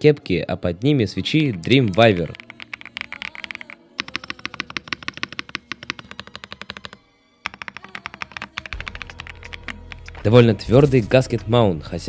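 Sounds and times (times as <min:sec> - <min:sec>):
background music: 0:00.0 - 0:12.0
mechanical keyboard typing: 0:01.5 - 0:10.4.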